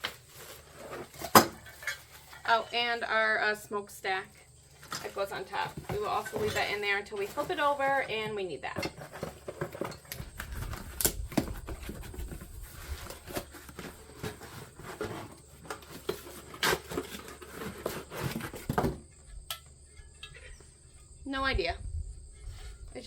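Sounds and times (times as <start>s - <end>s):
packaging rustling and scraping: 0.0s - 2.9s, 4.5s - 19.1s.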